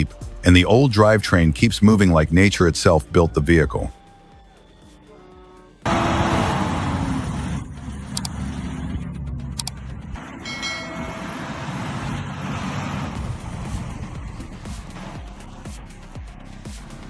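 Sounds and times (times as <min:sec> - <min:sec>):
truck engine running hard: 0:05.8 - 0:17.0
sharp clicks: 0:08.1 - 0:08.4, 0:09.5 - 0:09.8.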